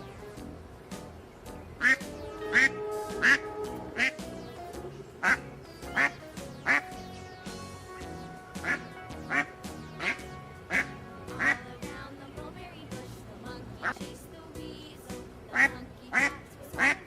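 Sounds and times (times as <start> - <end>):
background music: 0.0 - 17.0
duck quacking: 1.8 - 4.6, 5.2 - 7.0, 8.0 - 11.7, 15.5 - 17.0.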